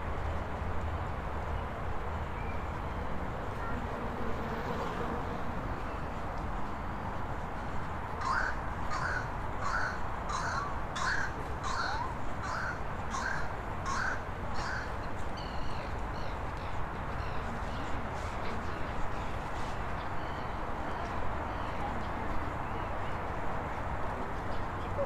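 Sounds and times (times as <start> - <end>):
crow cawing: 8.2 - 14.9.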